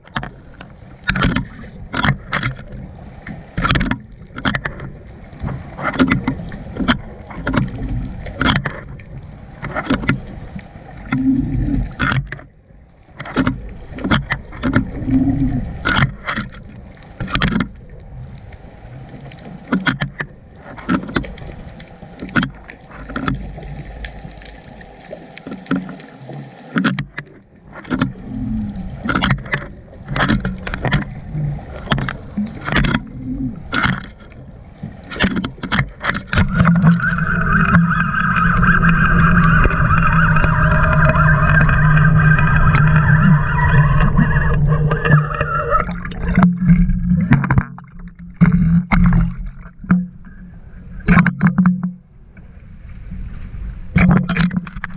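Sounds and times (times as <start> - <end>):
underwater knocks and clicks: 0.0 - 52.5, 53.4 - 54.9
muffled underwater rumble: 0.0 - 54.9.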